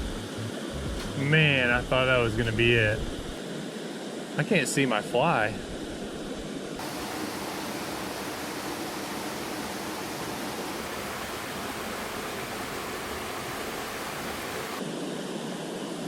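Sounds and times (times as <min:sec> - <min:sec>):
waterfall rushing: 0:06.8 - 0:14.8.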